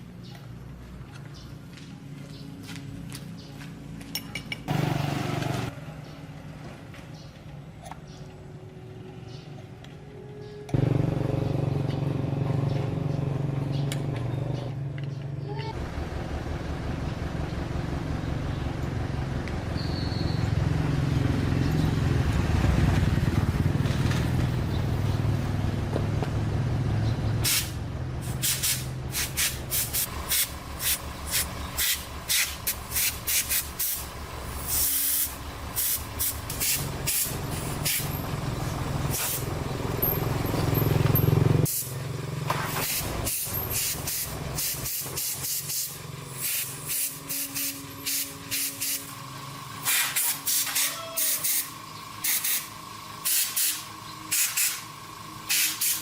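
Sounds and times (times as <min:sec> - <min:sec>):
short hissing bursts: 0:27.4 - 0:38.1, 0:42.8 - 0:49.1, 0:49.8 - 0:54.9, 0:55.5 - 0:56.0.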